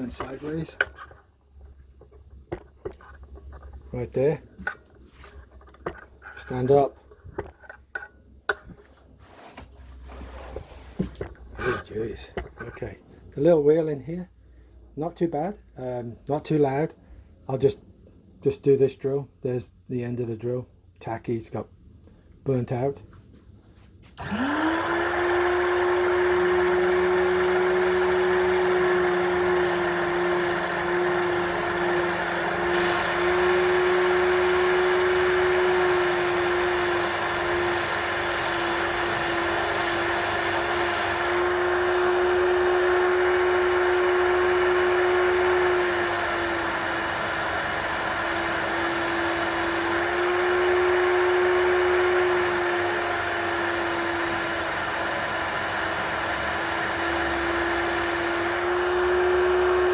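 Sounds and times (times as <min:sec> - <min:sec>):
grinding wheel hissing on drill bit: 0:24.2 - 0:59.9
small electric motor running: 0:24.2 - 0:59.9.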